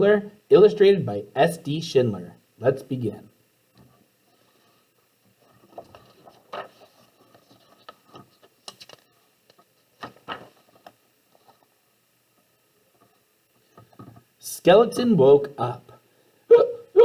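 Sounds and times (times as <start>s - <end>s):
book pages rustling: 4.4s - 11.7s.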